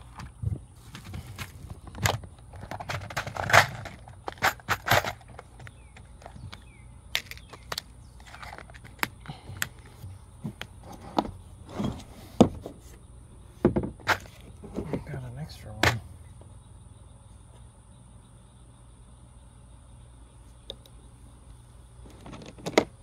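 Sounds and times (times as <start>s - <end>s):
metal parts and tools clinking: 0.9s - 6.5s, 7.2s - 9.0s.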